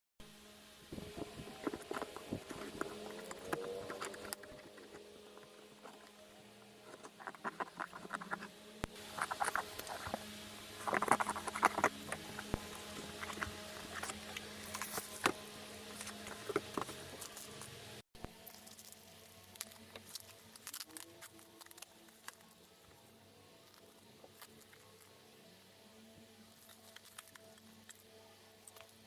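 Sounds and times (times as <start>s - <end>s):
faint steady hum: 0.2s - 29.0s
hands handling packaging: 10.8s - 22.8s.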